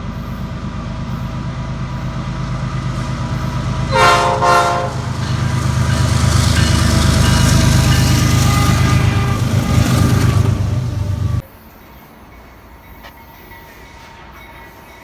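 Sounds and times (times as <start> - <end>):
train low rumble: 0.0 - 11.5
train horn blast: 3.9 - 11.4.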